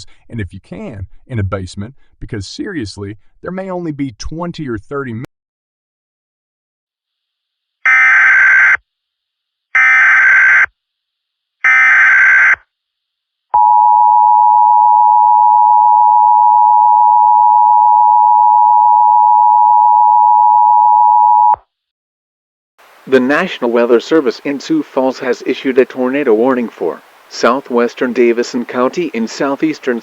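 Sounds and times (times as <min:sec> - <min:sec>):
loud two-tone attention signal: 0:11.7 - 0:12.6
screeching digital data tones: 0:11.7 - 0:12.6.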